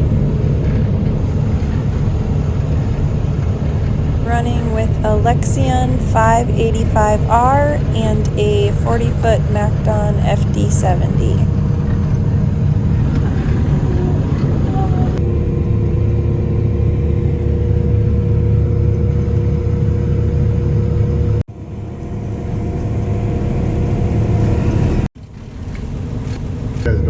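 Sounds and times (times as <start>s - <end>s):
combine harvester engine drone: 0.0s - 27.0s.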